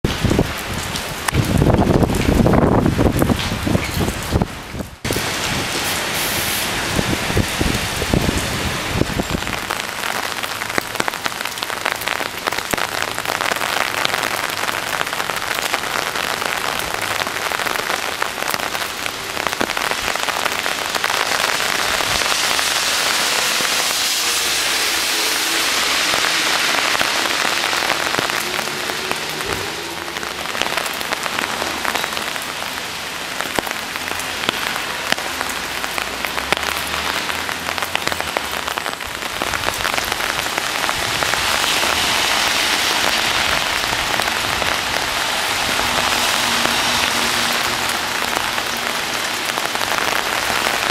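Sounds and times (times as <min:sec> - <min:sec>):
low wind rumble: 0:00.0 - 0:09.9, 0:39.0 - 0:50.9
heavy rain spattering: 0:00.0 - 0:50.9.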